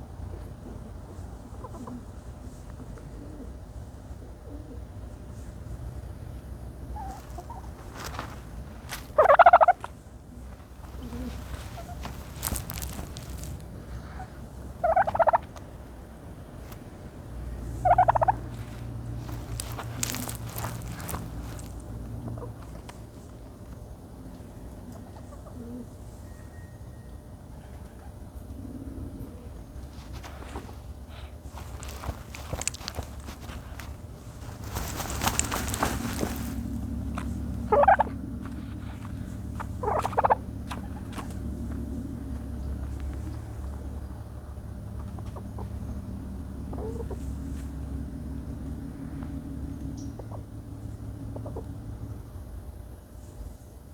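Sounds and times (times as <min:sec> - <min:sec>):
dirt scratching rustle: 0:05.3 - 0:23.9, 0:29.1 - 0:44.0
turkey rattling calls: 0:06.9 - 0:15.7, 0:17.5 - 0:22.7, 0:29.8 - 0:41.5, 0:45.0 - 0:47.3.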